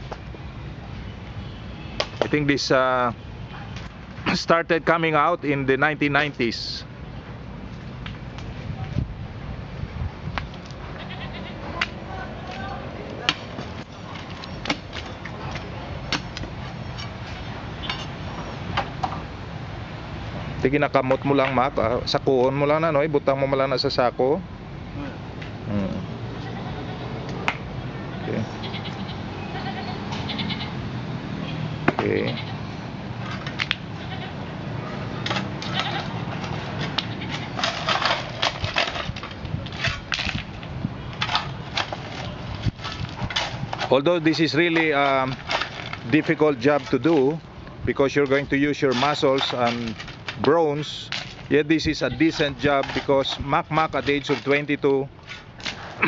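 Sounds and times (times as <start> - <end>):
rubble scraped by hand tools: 41.2 - 47.4, 48.2 - 56.0
tool striking concrete: 48.3 - 51.4.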